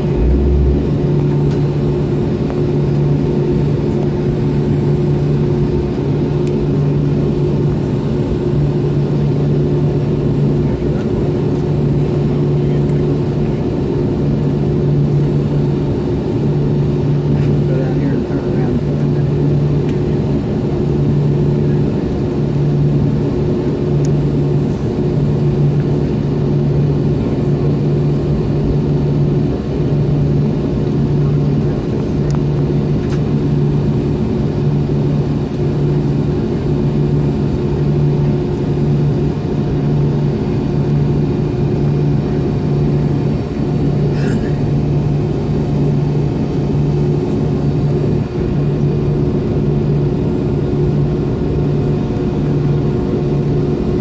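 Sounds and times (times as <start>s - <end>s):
throbbing low hum: 0.0s - 4.0s
jet engine rumble in cabin: 0.0s - 54.0s.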